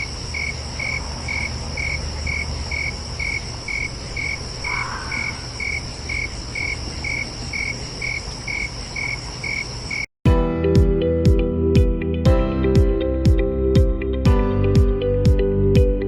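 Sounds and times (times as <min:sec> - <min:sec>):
cricket chirping: 0:00.0 - 0:10.1
high insect trill: 0:00.0 - 0:10.1
plucked guitar music: 0:10.3 - 0:16.0.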